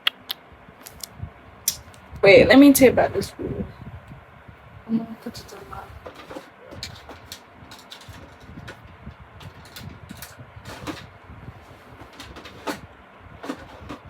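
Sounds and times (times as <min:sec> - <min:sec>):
low rumble: 0:00.6 - 0:06.1.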